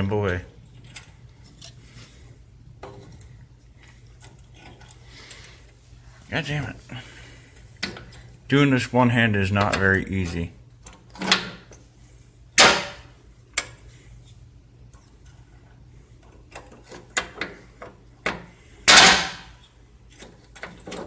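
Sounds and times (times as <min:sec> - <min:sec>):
metal clank: 0:18.9 - 0:19.5.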